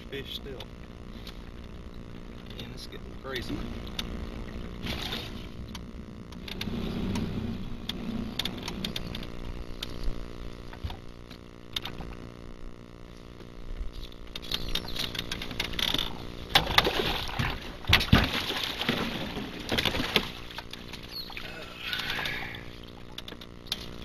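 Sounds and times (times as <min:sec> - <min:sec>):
steady low hum: 0:00.0 - 0:24.0.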